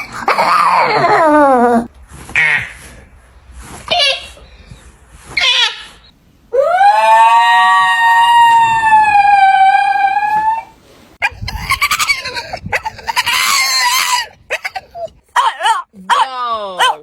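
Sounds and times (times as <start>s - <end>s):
dog yowling roughly: 0.0s - 1.9s, 11.2s - 17.0s.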